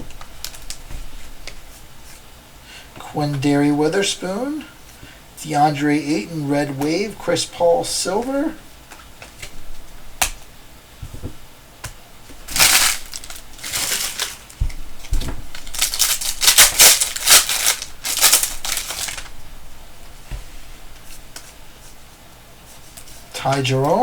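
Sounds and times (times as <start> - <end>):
plastic wrapper crinkling: 0.1 - 0.8, 12.5 - 19.4.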